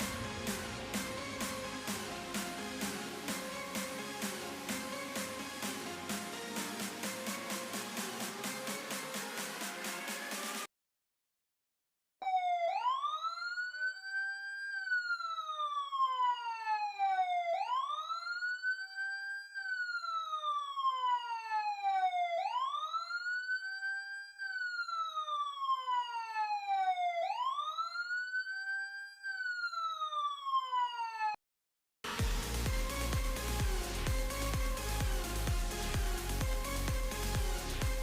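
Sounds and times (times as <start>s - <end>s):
electronic fire alarm siren wailing: 0.0s - 10.7s, 12.2s - 31.4s.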